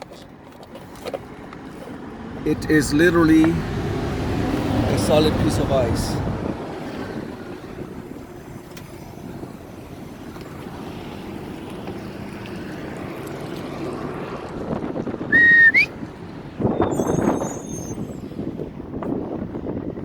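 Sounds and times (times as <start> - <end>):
truck running: 0.0 - 20.0
wind on microphone: 3.6 - 8.6, 13.8 - 20.0
high squeal rising in pitch: 15.3 - 15.9, 16.7 - 18.4.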